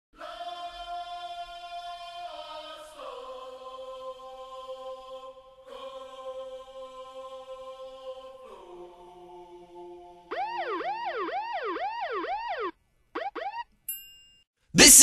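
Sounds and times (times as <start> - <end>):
siren-like wailing tone: 10.3 - 13.7.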